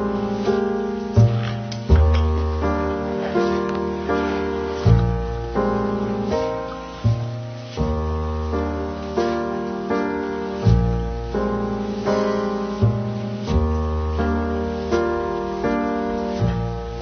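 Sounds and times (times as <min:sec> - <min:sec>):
piano chords ringing: 0:00.0 - 0:17.0.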